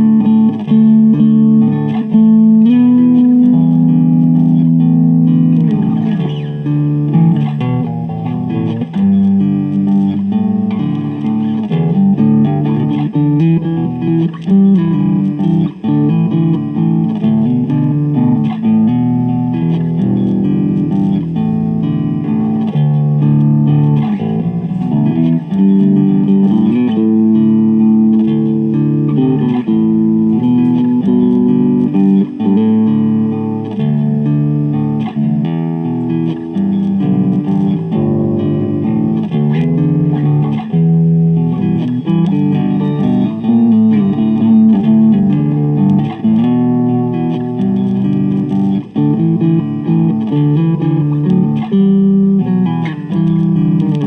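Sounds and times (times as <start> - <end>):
electric bass guitar riff: 0.0 - 54.0.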